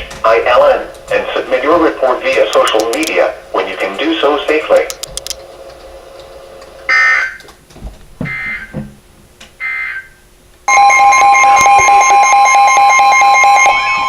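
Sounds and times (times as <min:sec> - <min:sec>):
buzzing digital data bursts: 0:10.7 - 0:13.9
two-tone attention signal: 0:10.7 - 0:14.0.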